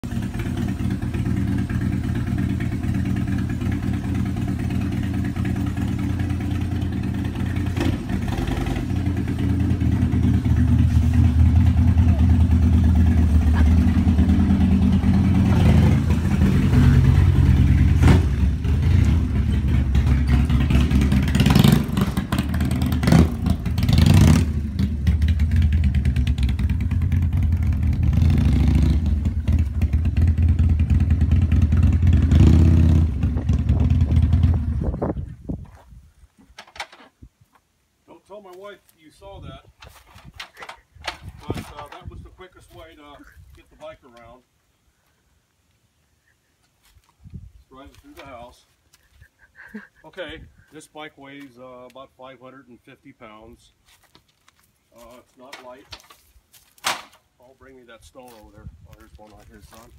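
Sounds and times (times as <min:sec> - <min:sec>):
motorcycle engine running: 0:00.0 - 0:35.3.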